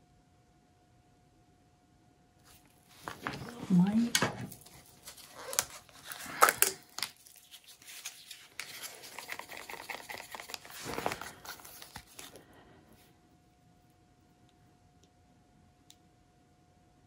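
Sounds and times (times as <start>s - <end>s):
rustling: 2.5s - 13.1s.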